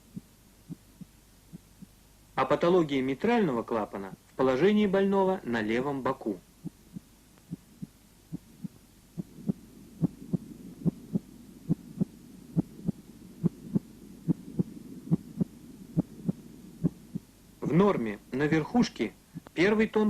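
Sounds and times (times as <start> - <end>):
heartbeat through stethoscope: 0.0 - 2.0, 6.6 - 17.4.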